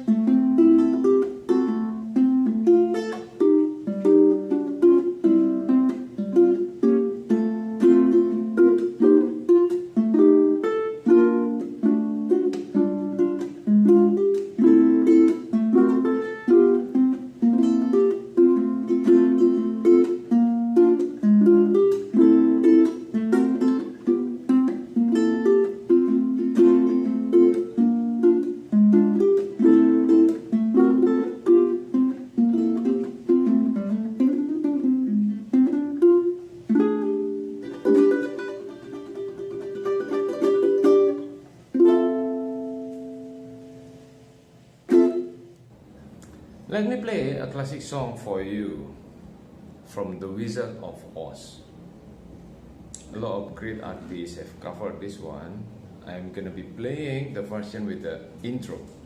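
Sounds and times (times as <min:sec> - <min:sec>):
ukulele plucked chords: 0:00.0 - 0:48.1.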